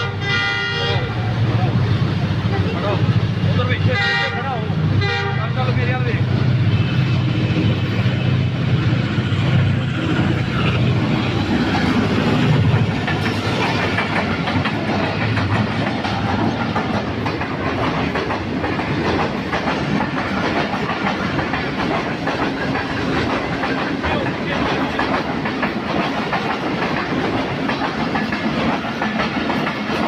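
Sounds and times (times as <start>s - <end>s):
train low rumble: 0.0s - 30.0s
train wheels clickety-clack: 1.4s - 30.0s.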